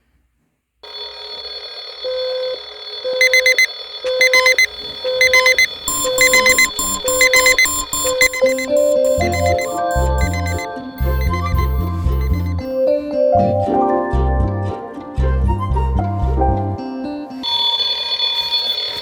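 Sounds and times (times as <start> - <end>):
alarm clock beeping: 2.1 - 12.8
steady high tone: 5.3 - 12.8.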